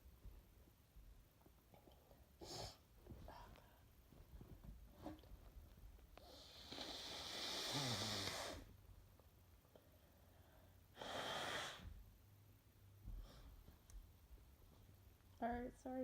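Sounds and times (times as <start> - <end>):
woman blowing through congested nose: 6.2 - 8.8, 10.9 - 12.0.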